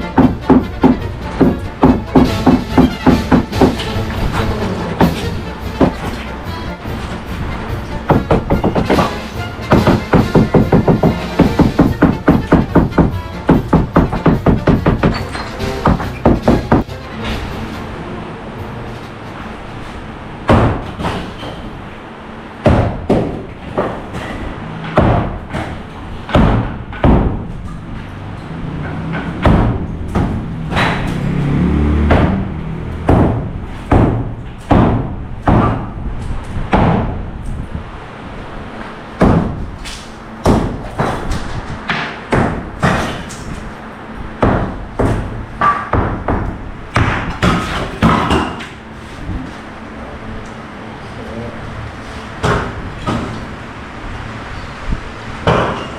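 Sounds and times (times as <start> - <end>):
heavy demolition thumps and knocks: 0.0 - 17.8, 20.4 - 21.8, 22.6 - 37.7, 39.2 - 48.8.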